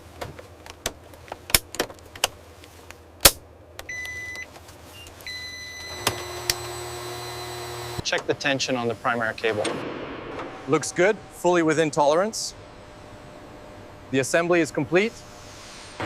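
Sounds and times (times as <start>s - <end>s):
electric motor whine: 5.8s - 8.0s.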